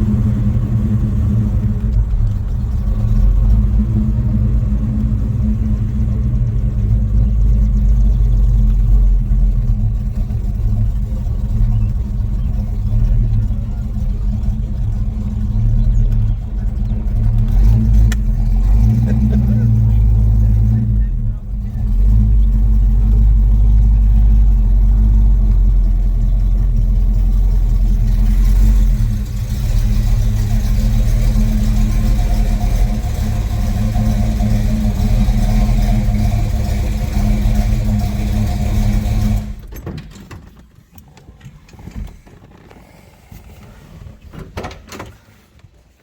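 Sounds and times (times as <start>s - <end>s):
car engine running loudly: 0.0s - 39.7s.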